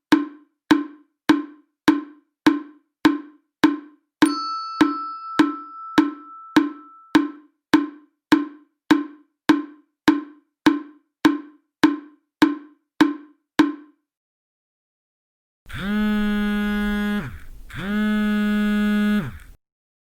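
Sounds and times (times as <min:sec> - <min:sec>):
woodblock-like ticking: 0:00.0 - 0:04.0, 0:04.8 - 0:14.0
ringing tone: 0:04.2 - 0:07.4.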